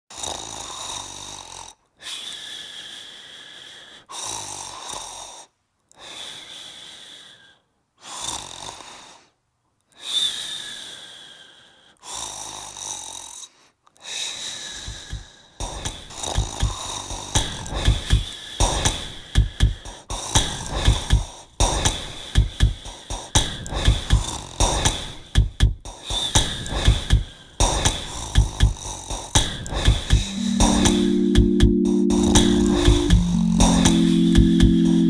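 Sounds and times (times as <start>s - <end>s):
cat snoring: 0.1s - 1.7s.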